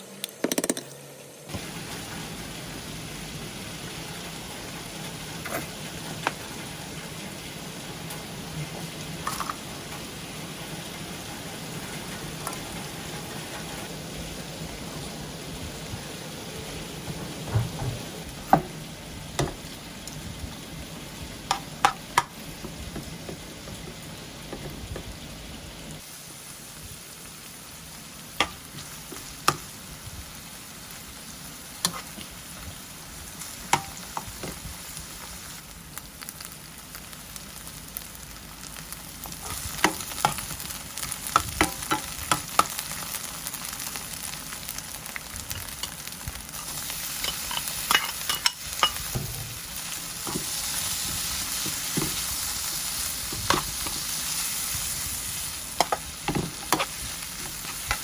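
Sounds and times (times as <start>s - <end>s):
food sizzling in a frying pan: 1.1s - 58.0s
spatula scraping a pan: 31.8s - 32.2s, 55.8s - 58.0s.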